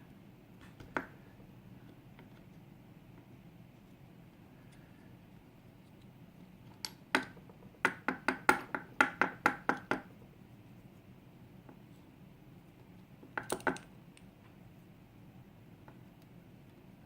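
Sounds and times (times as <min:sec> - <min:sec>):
lock parts knocking on hard surface: 0:13.4 - 0:13.9.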